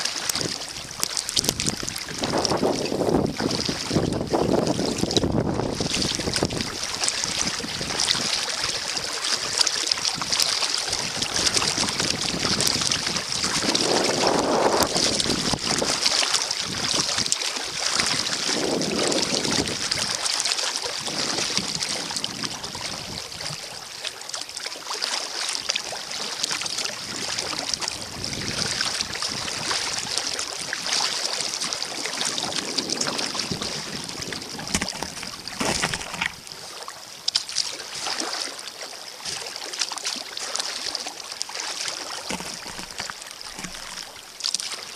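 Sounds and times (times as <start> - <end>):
water around kayak: 0.0 - 44.9
wind gusting across microphone: 0.4 - 20.2, 21.0 - 23.8, 26.8 - 36.6.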